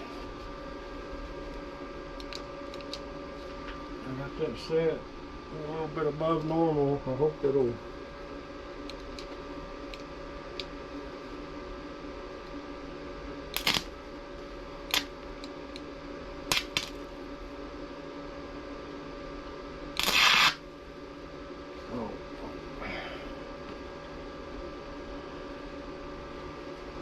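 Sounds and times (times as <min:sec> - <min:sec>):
steady hum: 0:00.0 - 0:27.0
stick welder arc crackling: 0:13.5 - 0:14.0, 0:14.8 - 0:17.0, 0:19.9 - 0:20.6.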